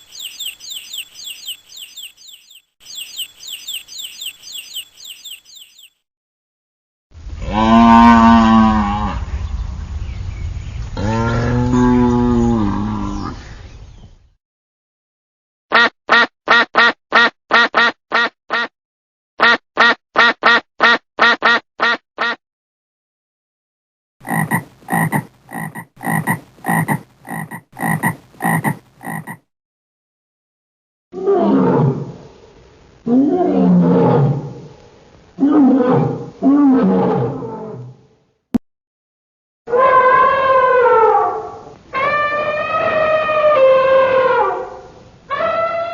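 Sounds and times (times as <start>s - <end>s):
long low roars: 10.9s - 13.5s
animal croaks: 24.2s - 29.4s.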